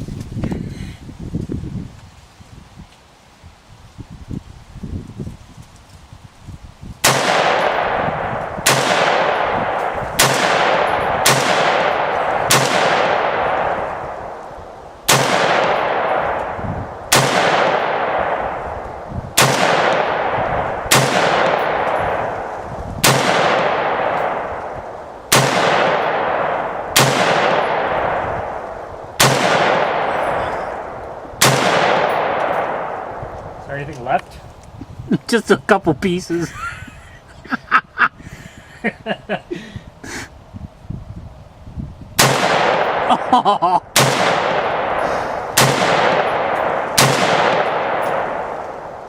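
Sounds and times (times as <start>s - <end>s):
rifle shots with echo: 7.0s - 14.5s, 15.1s - 33.5s, 42.2s - 49.0s.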